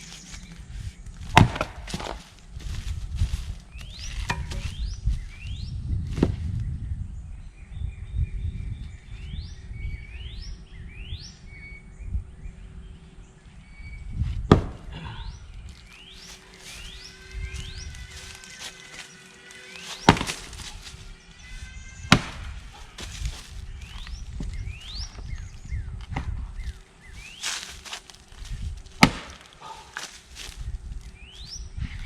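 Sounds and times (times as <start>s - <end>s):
axe splitting firewood: 1.2s - 2.3s, 14.5s - 15.0s, 19.8s - 20.9s, 22.1s - 24.1s, 28.9s - 30.5s
bird calling with rising notes: 15.0s - 28.2s.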